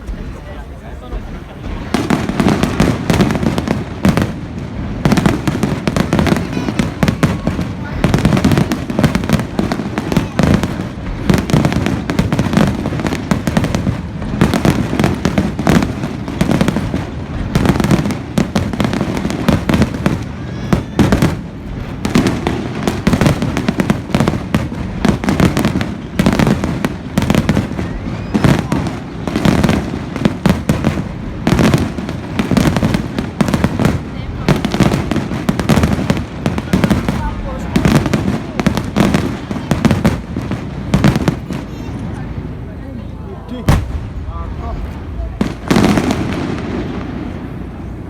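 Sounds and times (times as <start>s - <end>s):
fireworks bangs and crackles: 0.0s - 48.0s.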